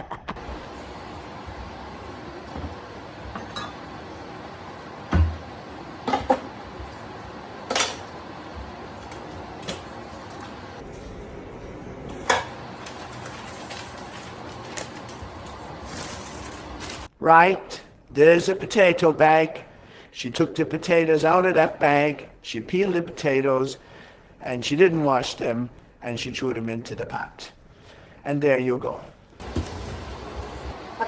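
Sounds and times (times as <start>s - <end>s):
dishes and utensils clinking: 2.5s - 4.2s, 6.0s - 6.6s, 7.6s - 8.2s, 12.3s - 15.2s.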